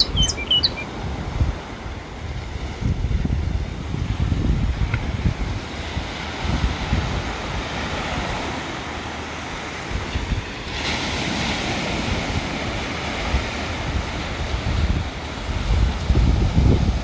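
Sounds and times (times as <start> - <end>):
waves washing on shore: 0.0 - 17.0
wind buffeting microphone: 0.0 - 17.0.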